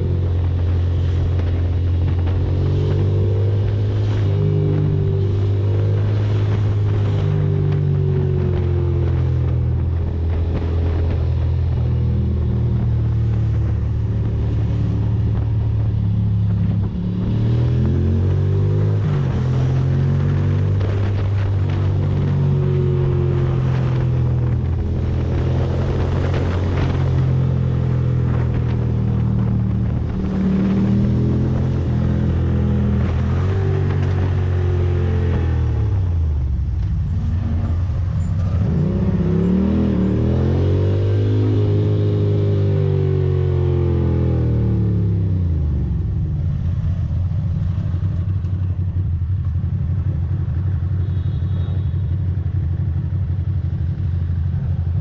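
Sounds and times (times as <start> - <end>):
motorcycle engine running: 0.0 - 40.8.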